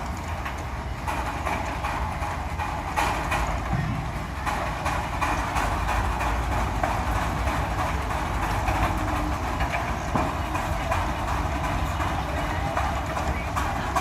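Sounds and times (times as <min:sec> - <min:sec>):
steam engine running: 0:00.0 - 0:14.0.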